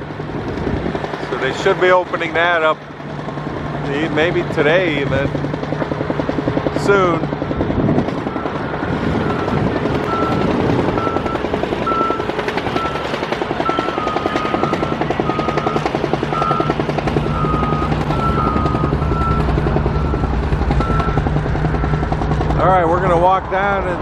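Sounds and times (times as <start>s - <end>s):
fast-pulsing rumble: 0.0s - 24.0s
backup alarms beeping: 8.3s - 22.2s.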